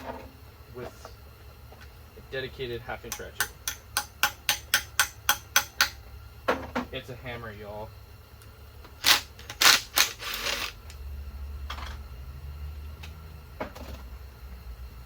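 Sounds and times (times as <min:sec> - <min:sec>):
hammer striking metal: 0:03.1 - 0:06.0.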